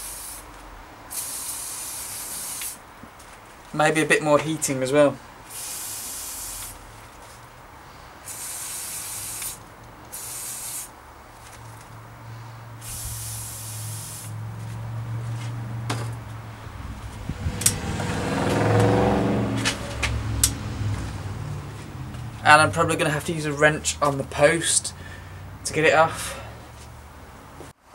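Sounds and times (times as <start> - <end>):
aerosol spray hissing: 0.0 - 0.5, 1.1 - 2.8, 5.5 - 6.8, 8.2 - 10.9, 12.8 - 14.4
low hum: 14.4 - 23.2.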